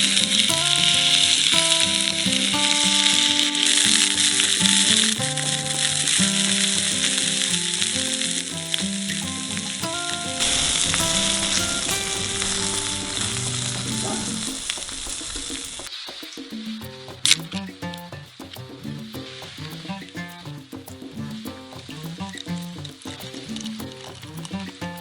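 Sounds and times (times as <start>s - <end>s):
background music: 9.7s - 14.7s.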